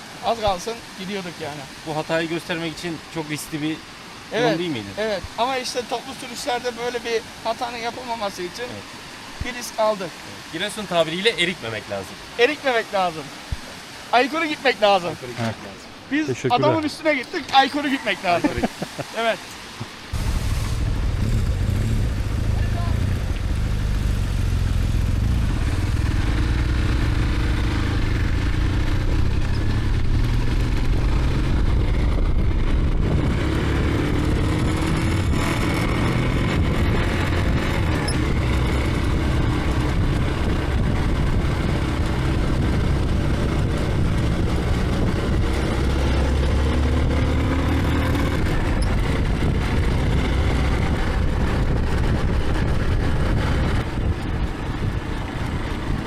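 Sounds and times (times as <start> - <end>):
motorcycle engine revving: 20.1 - 56.0.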